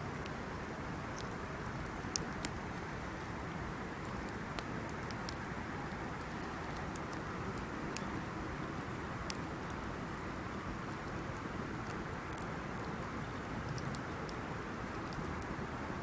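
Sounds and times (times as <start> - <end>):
bonfire crackling and popping: 0.0 - 8.2.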